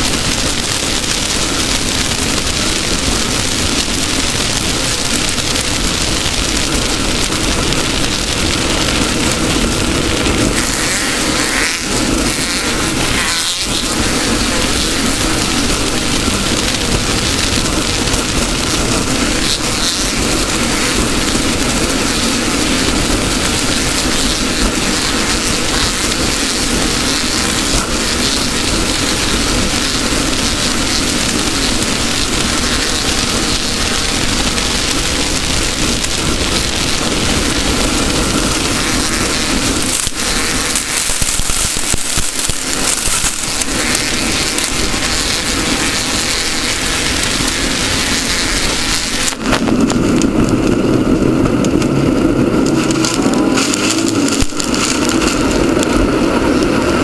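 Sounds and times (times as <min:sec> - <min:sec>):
rough terrain noise: 0:00.0 - 0:57.0
wind noise: 0:00.0 - 0:57.0
race car engine roaring: 0:42.3 - 0:57.0.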